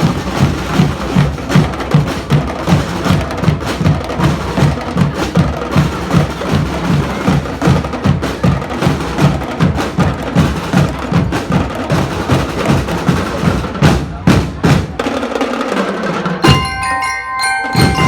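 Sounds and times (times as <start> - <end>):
marching drums beating: 0.0 - 18.0
bell lyre melody: 16.4 - 18.0.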